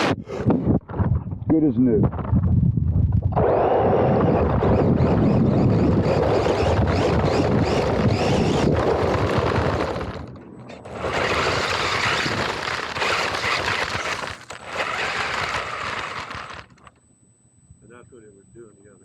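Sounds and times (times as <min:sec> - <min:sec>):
wind rumble: 0:00.0 - 0:16.7
thin high whine: 0:03.4 - 0:19.0
tyres on gravel: 0:04.7 - 0:16.9.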